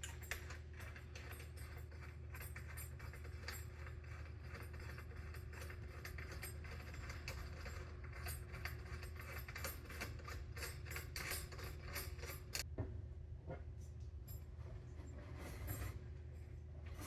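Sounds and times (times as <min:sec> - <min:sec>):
metal clicking and scraping: 0:00.0 - 0:12.7.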